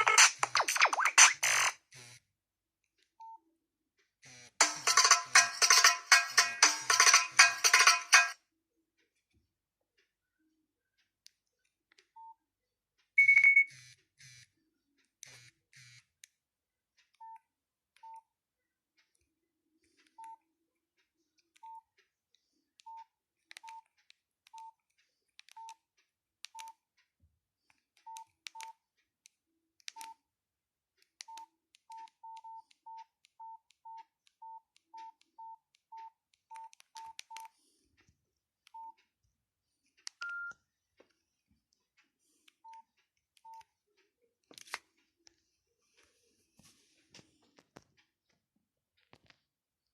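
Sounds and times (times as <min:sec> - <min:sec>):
keypad beeps: 0:00.0 - 0:01.7, 0:04.6 - 0:08.4, 0:13.2 - 0:13.8, 0:25.5 - 0:25.8, 0:28.1 - 0:28.8, 0:31.2 - 0:37.5, 0:40.1 - 0:40.6.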